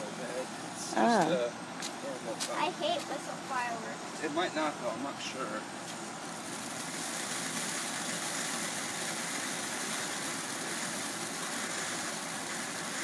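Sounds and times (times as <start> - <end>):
firework spraying sparks hiss: 6.2 - 13.0.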